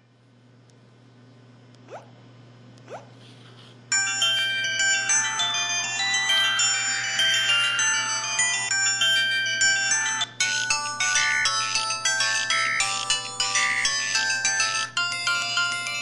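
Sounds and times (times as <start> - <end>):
phone ringtone melody: 3.9 - 16.0.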